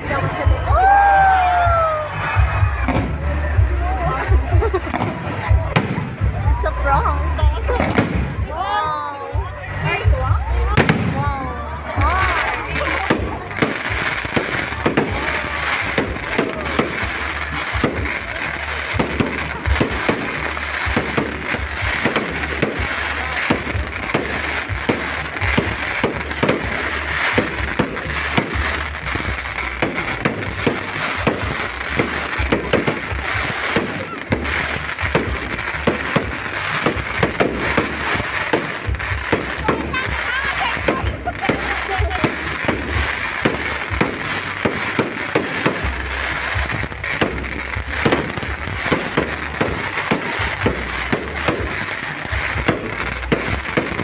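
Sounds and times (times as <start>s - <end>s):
fireworks banging and crackling: 0.0s - 54.0s.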